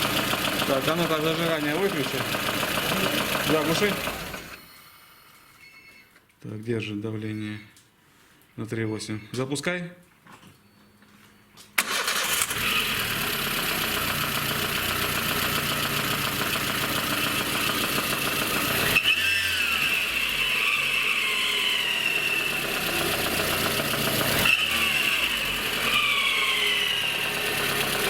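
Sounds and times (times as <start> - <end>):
car engine running: 0.0 - 4.6, 12.4 - 28.0
piercing screech: 19.0 - 22.7.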